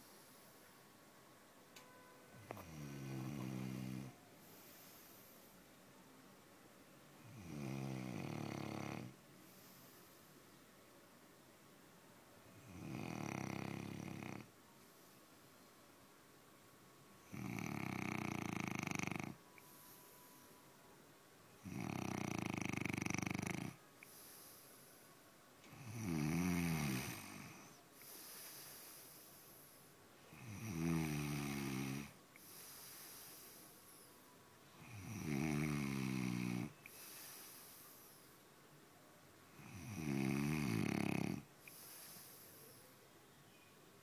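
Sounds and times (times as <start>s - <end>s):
person snoring: 2.5s - 4.2s, 7.2s - 9.2s, 12.6s - 14.5s, 17.2s - 19.4s, 21.6s - 24.7s, 25.7s - 29.4s, 30.3s - 33.8s, 34.8s - 38.1s, 39.6s - 42.8s.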